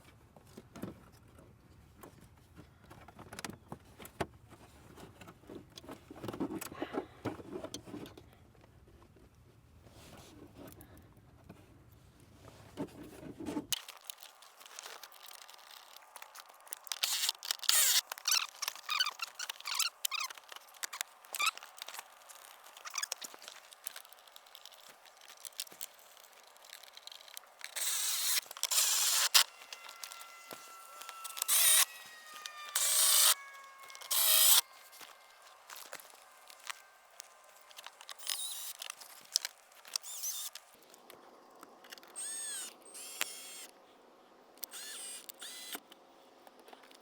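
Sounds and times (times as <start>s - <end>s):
plastic trim rustling and scraping: 12.8s - 41.0s
faint squeak: 17.1s - 40.6s.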